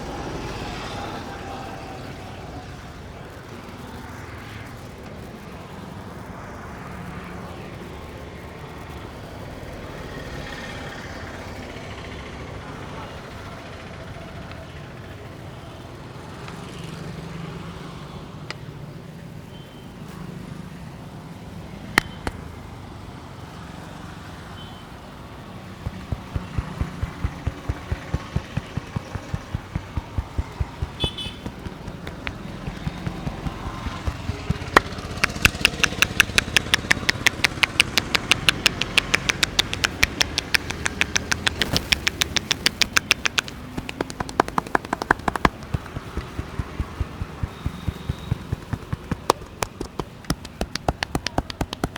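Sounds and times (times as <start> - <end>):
street traffic noise: 0.0 - 51.9
sharp clapping strikes: 25.8 - 51.9.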